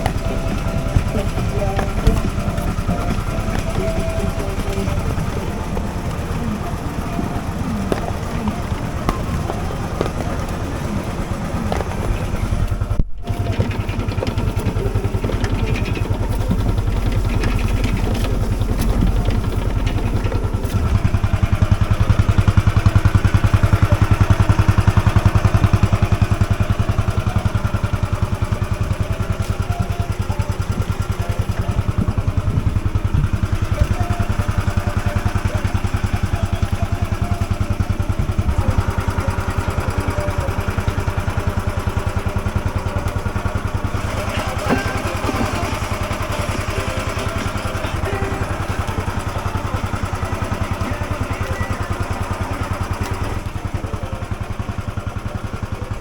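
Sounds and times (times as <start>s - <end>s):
tractor engine running: 0.0s - 56.0s.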